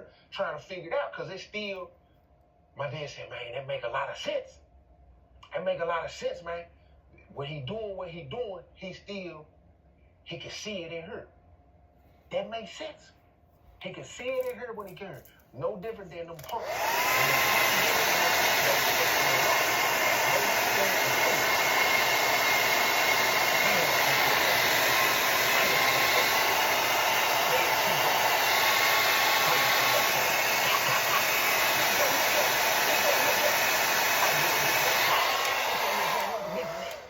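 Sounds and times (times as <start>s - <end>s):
hair dryer blowing: 16.4s - 37.0s.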